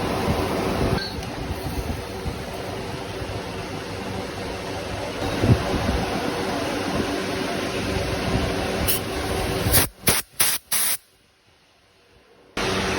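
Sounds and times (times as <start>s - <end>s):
pressurised spray hissing: 8.8s - 11.1s.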